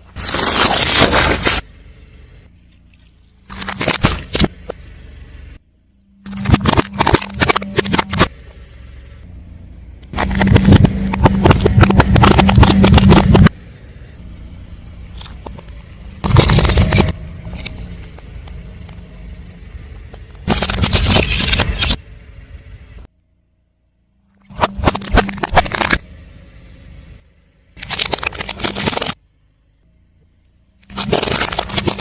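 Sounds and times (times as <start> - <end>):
tyre crushing crunchy objects: 0.0 - 1.6, 3.4 - 4.7, 6.3 - 8.3, 10.1 - 13.6, 16.2 - 18.2, 20.4 - 22.0, 24.5 - 26.1, 27.8 - 29.2, 30.8 - 32.0
car engine humming: 0.0 - 32.0.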